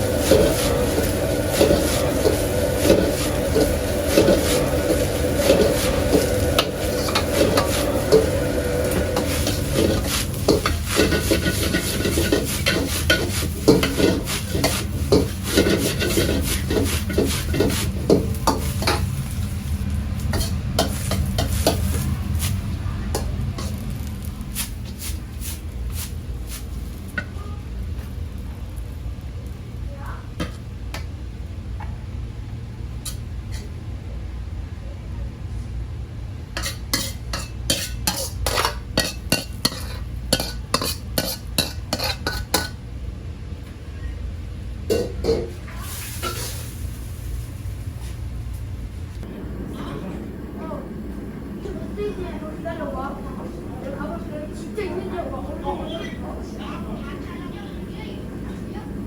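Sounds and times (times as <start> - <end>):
metal spatula scraping pan: 0.0 - 22.6, 36.6 - 42.8
food sizzling: 0.0 - 27.1, 36.6 - 42.8, 44.9 - 48.4, 49.2 - 59.0.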